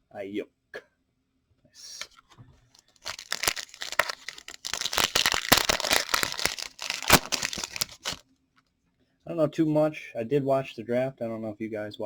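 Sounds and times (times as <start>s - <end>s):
wrapper crinkling and tearing: 3.0s - 8.2s.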